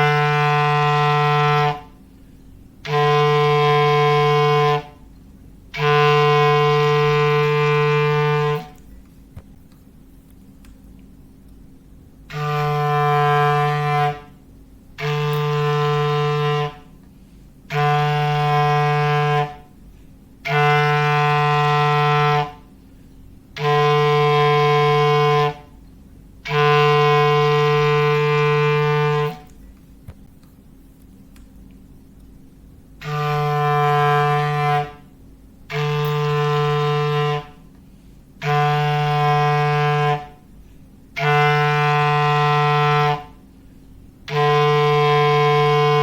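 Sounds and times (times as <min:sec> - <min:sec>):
clarinet low blasts: 0:00.0 - 0:02.0, 0:02.8 - 0:05.1, 0:05.7 - 0:08.8, 0:12.2 - 0:17.0, 0:17.7 - 0:19.8, 0:20.4 - 0:22.8, 0:23.5 - 0:25.8, 0:26.4 - 0:29.6, 0:33.0 - 0:37.8, 0:38.4 - 0:40.5, 0:41.2 - 0:43.5, 0:44.2 - 0:46.0.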